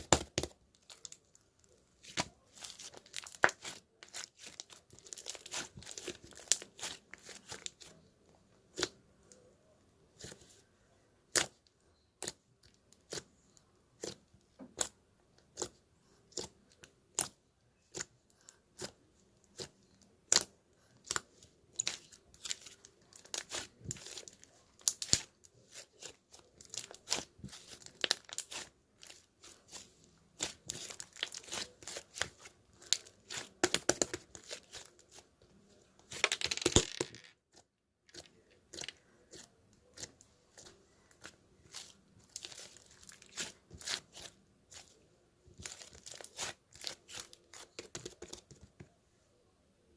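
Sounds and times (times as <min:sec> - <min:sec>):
crinkly material crackling: 0:00.6 - 0:08.0, 0:21.7 - 0:48.7.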